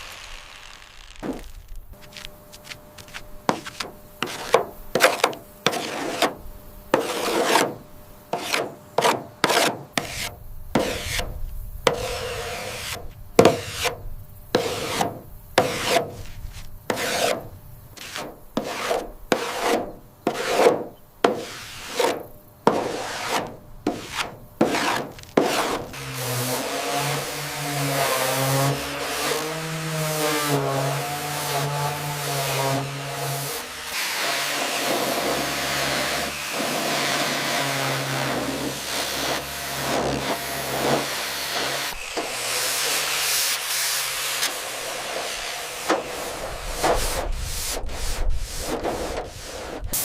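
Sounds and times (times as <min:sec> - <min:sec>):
hand tool scraping a surface: 0:00.0 - 0:50.0.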